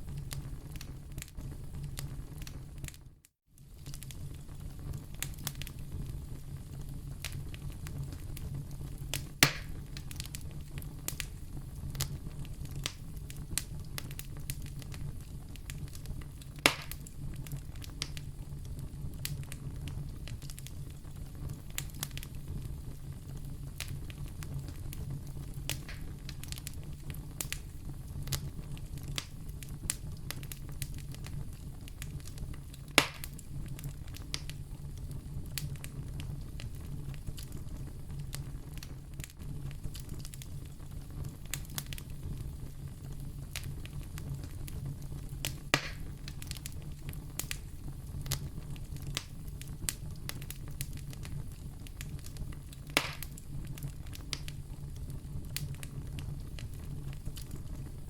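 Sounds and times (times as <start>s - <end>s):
wood fire crackling: 0.0s - 58.0s
sharp fire pops: 3.6s - 58.0s.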